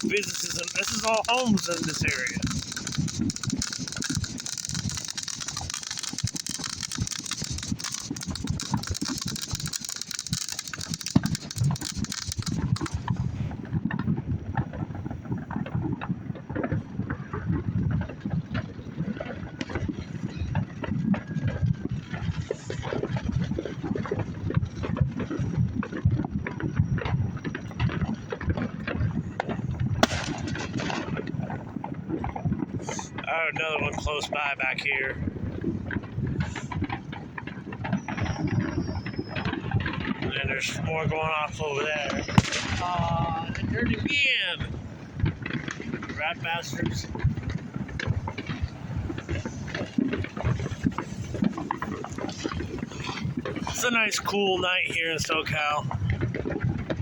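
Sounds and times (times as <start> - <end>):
sharp loud firework crack: 0.0 - 14.0, 27.8 - 54.2
distant fireworks popping and banging: 0.0 - 57.0
wind rumble on microphone: 0.0 - 57.0.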